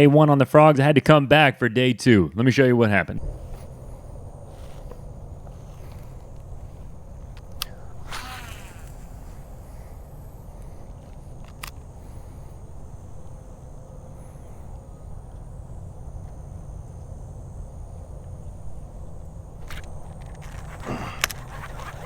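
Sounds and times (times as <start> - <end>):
low rumble: 3.1 - 20.0
high insect drone: 3.1 - 22.0
short raspy falling sound: 4.6 - 10.5
sharp clicks: 7.3 - 9.0, 10.9 - 11.9.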